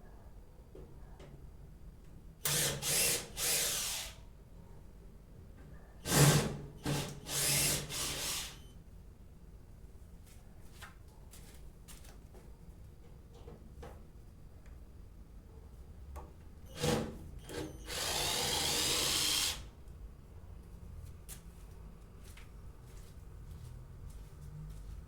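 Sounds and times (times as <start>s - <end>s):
electric drill whirring: 2.5s - 4.2s, 6.1s - 8.7s, 16.7s - 19.7s.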